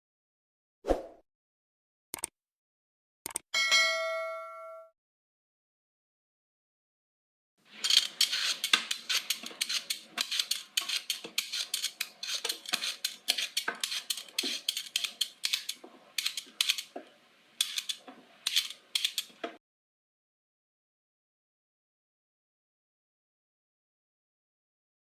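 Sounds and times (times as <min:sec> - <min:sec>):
vegetable peeler scraping: 0:07.7 - 0:17.0, 0:17.6 - 0:19.6.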